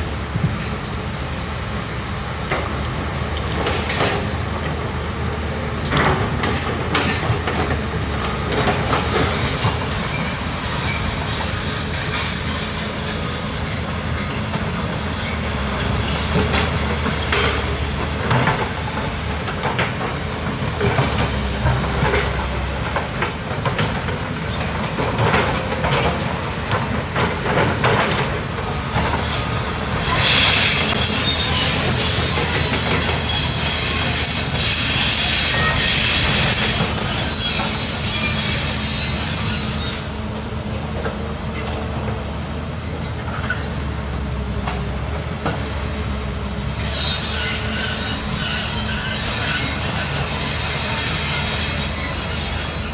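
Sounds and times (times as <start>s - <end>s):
excavator diesel engine running: 0.0s - 52.9s
high metallic squeal: 8.8s - 17.8s, 29.2s - 40.2s, 46.6s - 52.9s.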